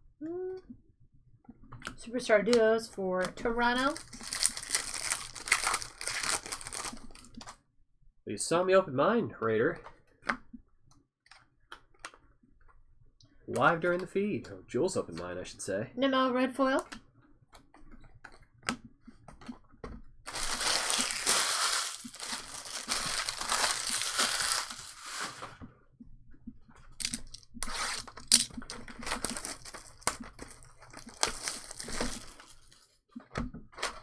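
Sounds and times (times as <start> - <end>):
foil pack tearing and crinkling: 3.6 - 7.4, 20.3 - 25.6, 27.0 - 32.9.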